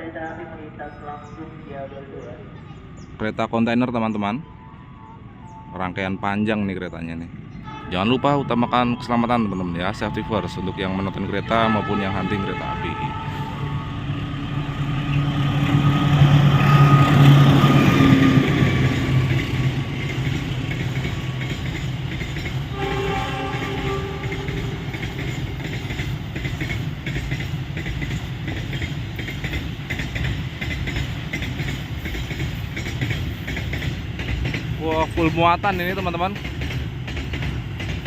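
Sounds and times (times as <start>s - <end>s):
freight train wheels clattering: 15.5s - 38.0s.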